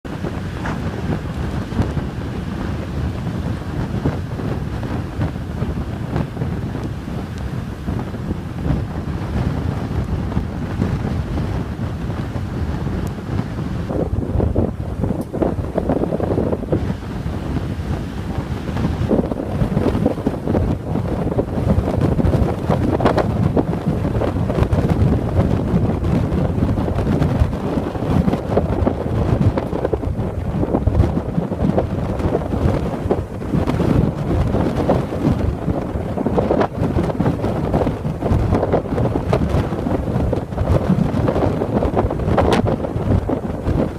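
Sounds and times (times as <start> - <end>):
gusty wind buffeting microphone: 0.0 - 43.9.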